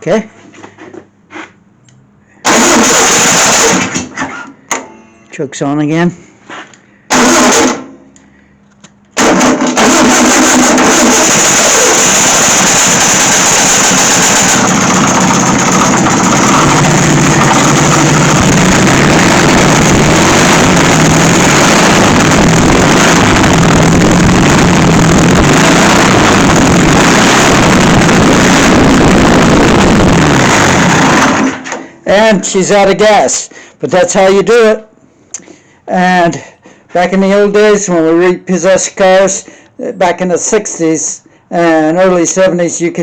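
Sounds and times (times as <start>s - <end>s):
car engine running loudly: 2.4s - 4.2s, 7.1s - 7.9s, 9.2s - 31.9s
starter cranking: 2.5s - 4.4s, 7.1s - 7.8s, 9.1s - 31.8s.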